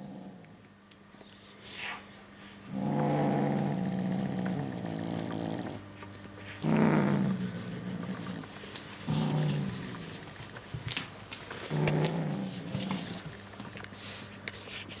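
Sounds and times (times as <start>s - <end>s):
kitten growling: 2.7s - 5.9s, 6.5s - 10.3s, 11.6s - 13.4s.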